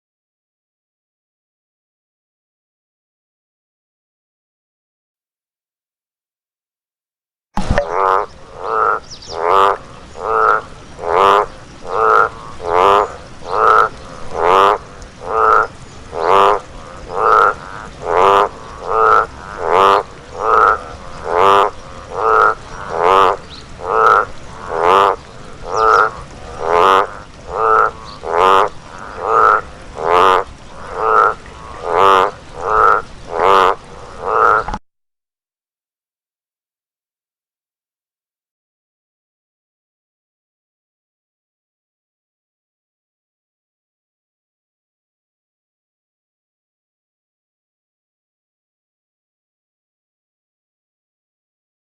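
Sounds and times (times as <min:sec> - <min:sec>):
frog croaking: 0:07.6 - 0:34.8.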